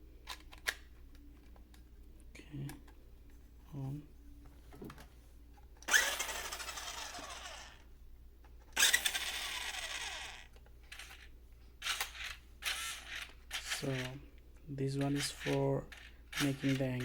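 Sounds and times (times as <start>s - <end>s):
toy car motor whirring: 5.8s - 7.9s, 8.7s - 14.2s, 14.9s - 17.0s.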